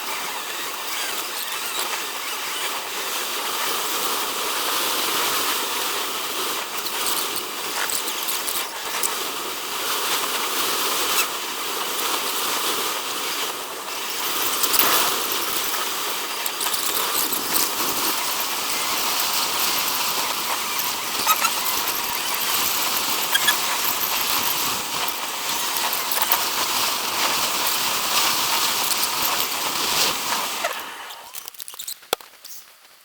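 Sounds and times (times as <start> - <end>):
small clicks: 0.1 - 2.8, 6.8 - 9.2, 14.0 - 32.8.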